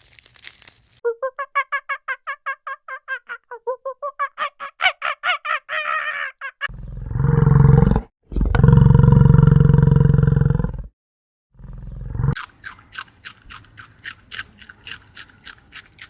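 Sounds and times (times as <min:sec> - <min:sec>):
animal low roaring calls: 0:06.7 - 0:10.9.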